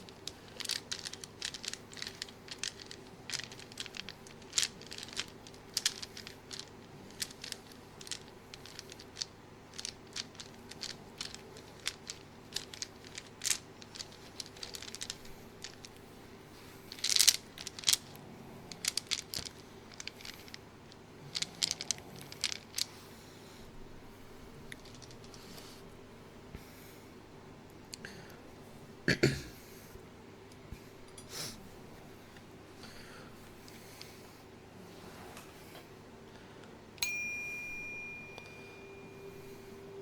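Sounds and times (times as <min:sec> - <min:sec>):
material crinkling and crackling: 0:00.0 - 0:22.9, 0:24.6 - 0:25.6
faint steady hum: 0:00.0 - 0:40.0.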